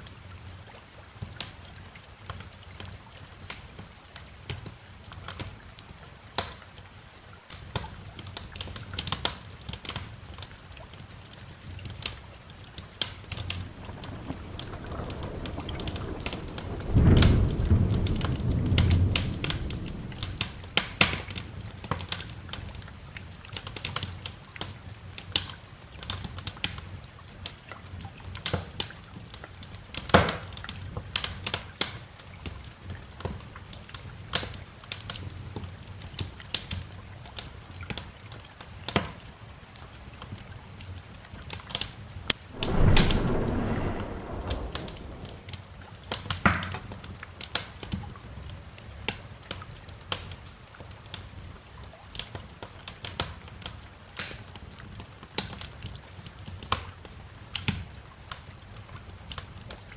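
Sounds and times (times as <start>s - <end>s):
rain hiss: 7.0s - 27.6s, 42.3s - 47.0s
wood fire crackling and popping: 11.7s - 22.8s, 42.3s - 45.8s
rolling thunder: 12.7s - 22.1s, 42.3s - 46.0s.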